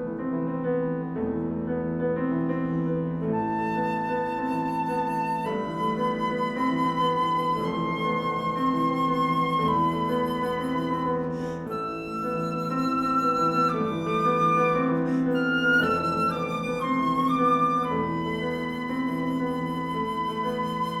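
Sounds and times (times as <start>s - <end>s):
piano accompaniment: 0.0s - 21.0s
flute playing long notes: 3.3s - 21.0s
flute player breaths: 11.2s - 11.8s, 15.0s - 15.4s.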